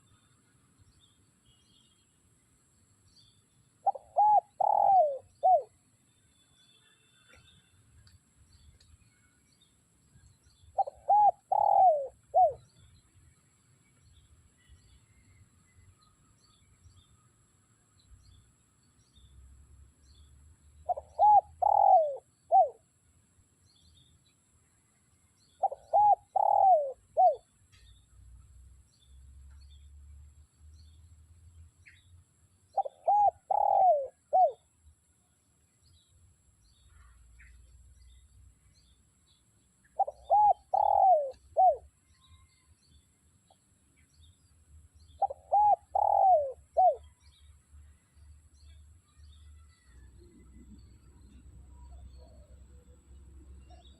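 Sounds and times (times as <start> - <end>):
dove cooing: 3.8 - 5.7, 10.8 - 12.6, 20.9 - 22.8, 25.6 - 27.4, 32.8 - 34.6, 40.0 - 41.9, 45.2 - 47.1.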